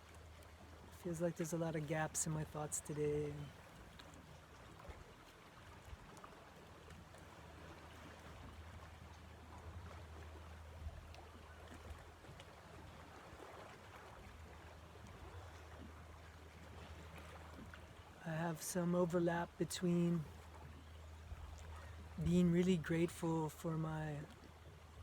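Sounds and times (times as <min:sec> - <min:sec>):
low steady hum: 0:00.0 - 0:04.1, 0:14.4 - 0:25.0.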